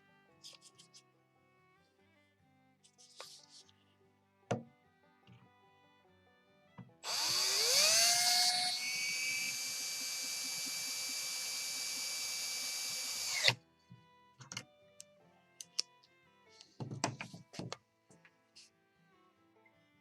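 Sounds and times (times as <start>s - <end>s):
power drill whining: 7.0s - 13.6s.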